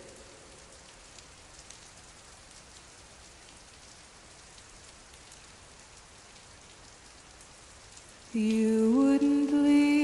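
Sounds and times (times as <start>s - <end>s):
rain falling: 0.0s - 10.0s.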